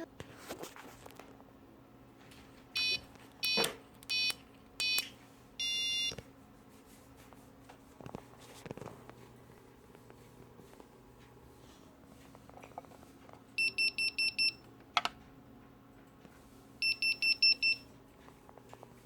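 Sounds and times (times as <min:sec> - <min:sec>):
electronic buzzer beeping: 0:02.8 - 0:05.0, 0:05.6 - 0:06.2
keypress tones: 0:02.8 - 0:06.2, 0:13.6 - 0:15.1, 0:16.8 - 0:17.9.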